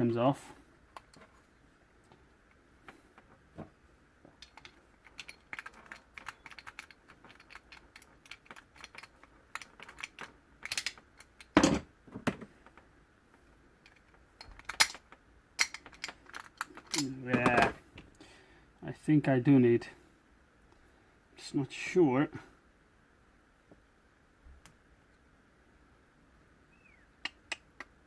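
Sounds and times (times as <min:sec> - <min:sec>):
hand tools clicking on metal parts: 0:04.3 - 0:11.6, 0:13.8 - 0:17.7.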